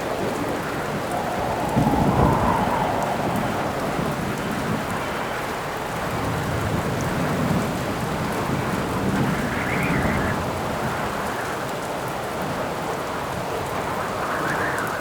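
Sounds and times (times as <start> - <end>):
steady rain: 0.0 - 15.0
low rumble of thunder: 0.1 - 11.3.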